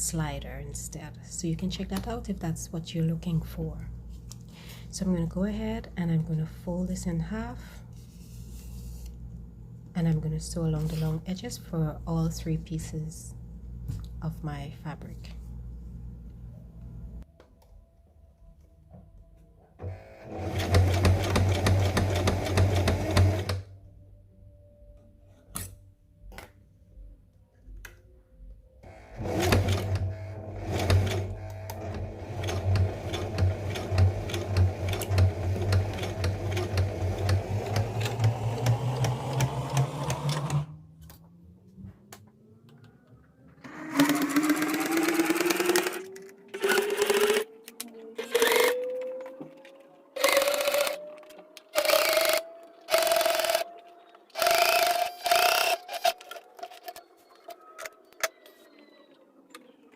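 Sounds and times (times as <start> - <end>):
sewing machine stitching: 19.8 - 23.6, 28.9 - 40.7, 43.6 - 47.5.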